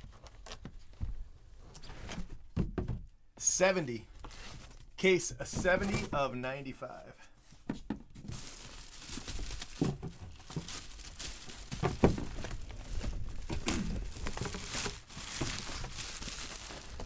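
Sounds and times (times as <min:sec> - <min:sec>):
plastic wrapping crinkling and tearing: 0:08.2 - 0:17.0.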